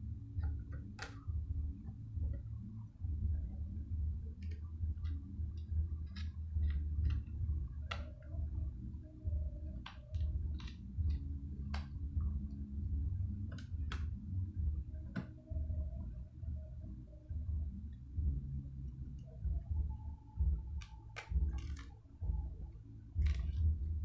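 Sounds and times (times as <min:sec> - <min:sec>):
steady low rumble: 0:00.0 - 0:24.0
small clicks of laptop parts: 0:04.4 - 0:08.4.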